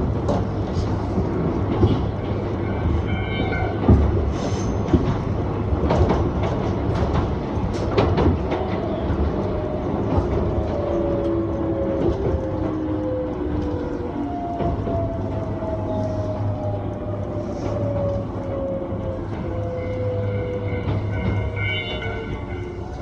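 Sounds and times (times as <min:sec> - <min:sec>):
train low rumble: 0:00.0 - 0:23.0
wheels clicking over rail joints: 0:00.0 - 0:23.0.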